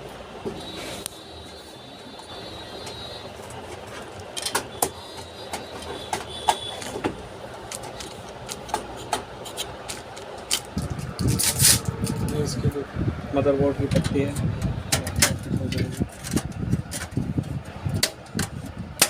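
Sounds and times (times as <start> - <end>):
clicks and knocks of computer parts: 3.7 - 12.2, 13.9 - 17.2, 17.9 - 19.0.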